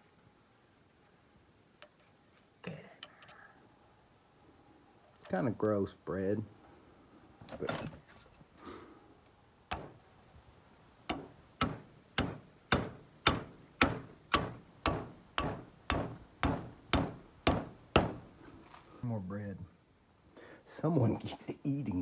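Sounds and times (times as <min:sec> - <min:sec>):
hammer tapping on metal: 0:09.7 - 0:10.0, 0:11.0 - 0:19.0.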